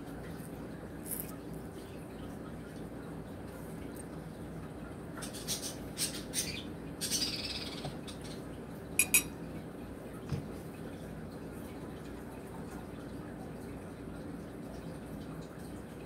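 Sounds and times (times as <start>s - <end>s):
spoon knocking bowl: 9.0s - 9.3s.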